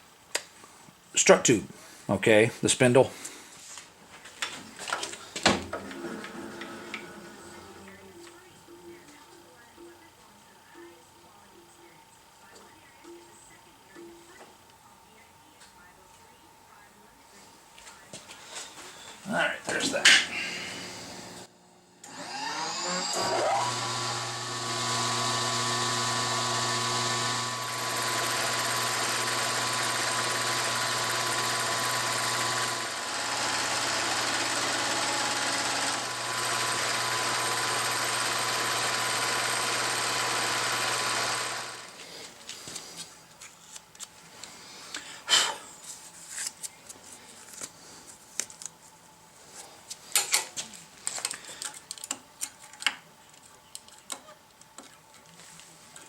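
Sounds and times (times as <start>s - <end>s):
power tool motor whining: 5.8s - 7.8s, 20.0s - 42.0s.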